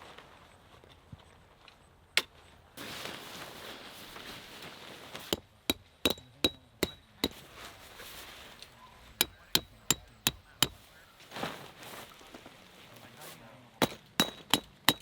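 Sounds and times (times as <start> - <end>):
rustling: 2.8 - 5.4, 7.0 - 13.4
hammer striking tent stakes: 5.2 - 7.7, 9.1 - 10.9, 13.8 - 15.0.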